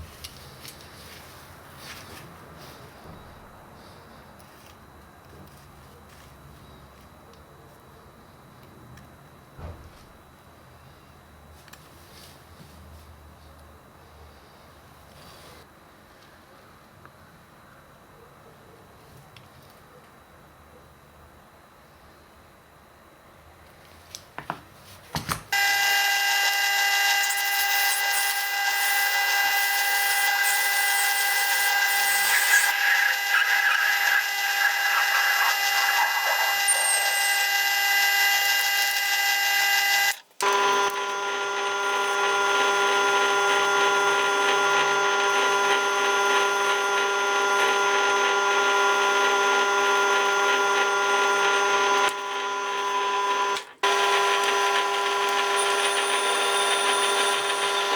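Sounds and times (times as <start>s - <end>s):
electric power tool running: 25.5s - 57.9s.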